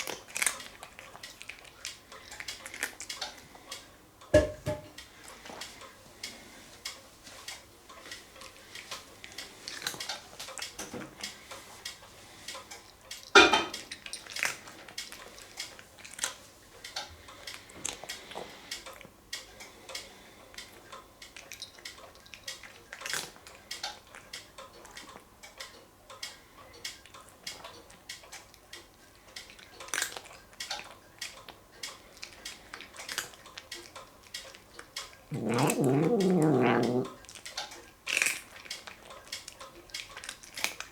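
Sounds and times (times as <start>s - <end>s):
cat crunching dry treats: 0.0s - 3.9s, 8.0s - 25.2s, 27.0s - 40.9s
pieces clicking against dish: 12.6s - 25.6s, 26.2s - 40.9s.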